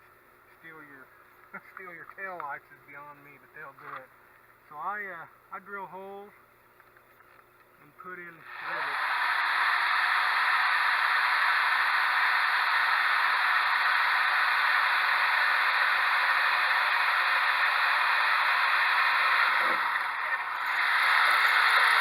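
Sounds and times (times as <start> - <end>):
power drill drilling: 8.4 - 22.0.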